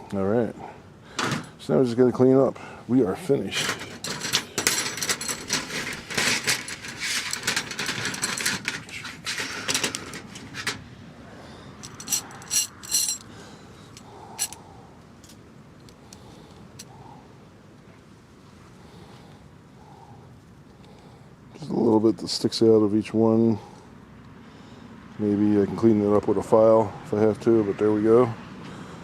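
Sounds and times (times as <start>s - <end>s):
small metal parts clinking: 3.6s - 10.8s, 11.8s - 13.3s, 13.9s - 14.6s.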